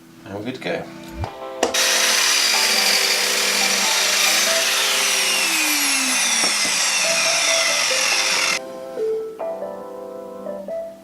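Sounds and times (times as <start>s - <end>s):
mitre saw cutting wood: 1.6s - 8.6s.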